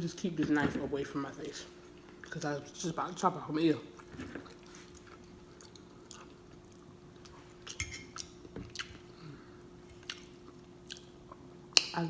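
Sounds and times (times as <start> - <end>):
faint steady hum: 0.0 - 12.0
chewing and lip smacking: 4.0 - 9.1, 9.9 - 11.9.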